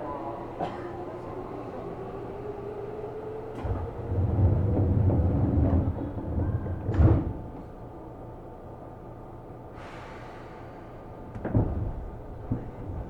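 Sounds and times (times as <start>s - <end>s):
electric train hum: 0.0s - 9.6s.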